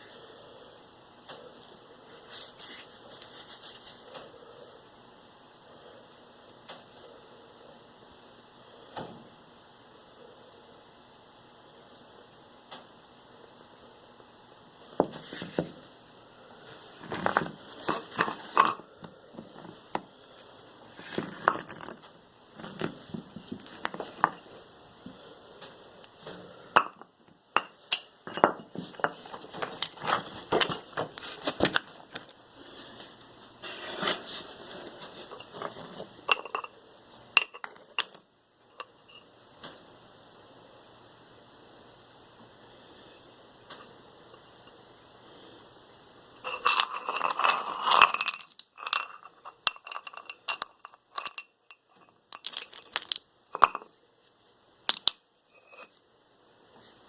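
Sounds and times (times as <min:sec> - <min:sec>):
hard objects clicking and clinking: 0:17.0 - 0:20.1, 0:20.9 - 0:24.6, 0:26.2 - 0:32.4, 0:35.2 - 0:36.7, 0:46.4 - 0:53.9, 0:54.9 - 0:55.9.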